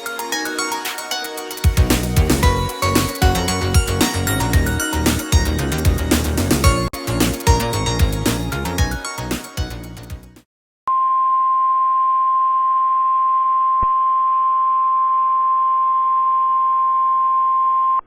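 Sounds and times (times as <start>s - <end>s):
music: 0.0s - 10.5s.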